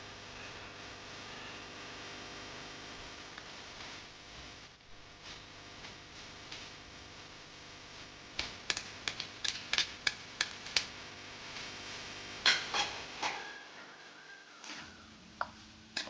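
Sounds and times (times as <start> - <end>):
sharp clicks and taps: 8.4 - 10.9.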